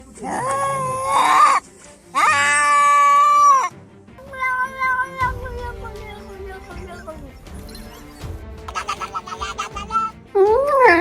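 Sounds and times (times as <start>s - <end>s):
cat meowing: 2.2s - 3.7s.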